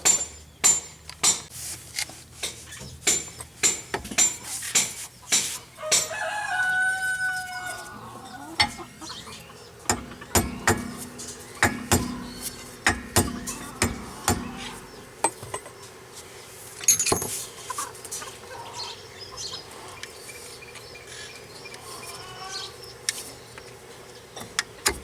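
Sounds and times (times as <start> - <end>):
rooster crowing: 5.8 - 9.5
low steady hum: 7.7 - 15.7
sharp clicks and knocks: 8.6 - 15.7.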